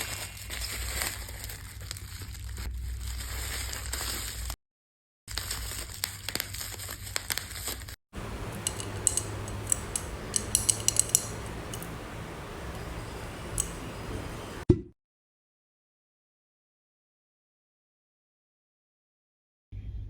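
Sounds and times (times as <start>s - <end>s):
steady low hum: 8.2s - 14.6s.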